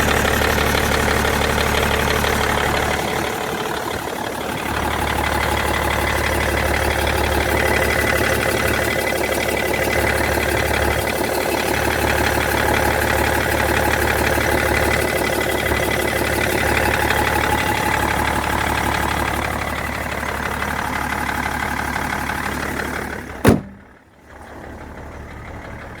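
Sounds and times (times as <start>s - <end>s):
diesel engine idling: 0.0s - 26.0s
loud thump: 23.4s - 24.0s.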